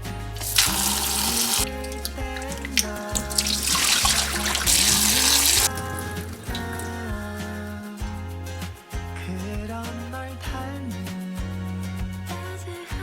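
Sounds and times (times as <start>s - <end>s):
background music with gliding melody: 0.0s - 13.0s
water running from a tap: 0.4s - 7.2s.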